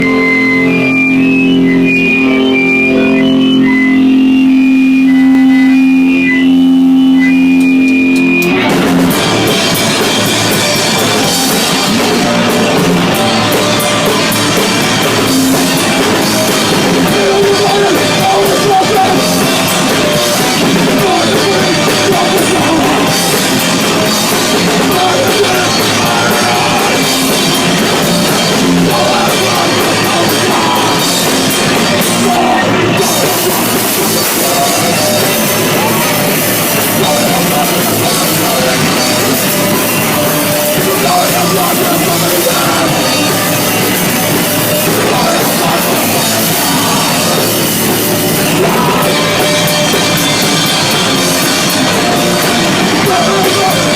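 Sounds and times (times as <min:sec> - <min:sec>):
punk rock band playing live: 0:00.0 - 0:53.9.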